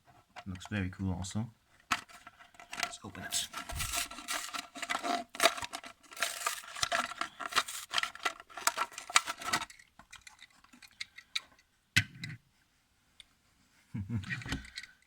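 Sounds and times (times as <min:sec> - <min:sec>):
plastic packaging crinkling: 0:02.0 - 0:10.6.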